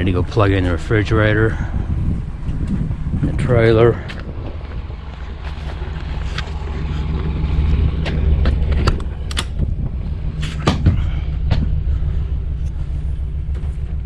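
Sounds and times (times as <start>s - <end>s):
truck engine idling: 0.0s - 14.0s
gear clicks and knocks: 4.0s - 11.9s.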